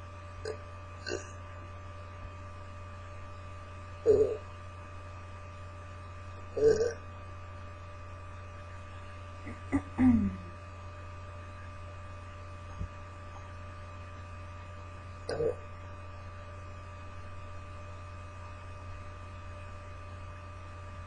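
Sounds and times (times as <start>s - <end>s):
electrical mains hum: 0.0s - 21.0s
woman burping: 0.5s - 1.4s, 4.1s - 4.4s, 6.6s - 7.0s, 9.4s - 10.5s, 15.3s - 15.6s
woman making soft sounds: 9.4s - 10.6s.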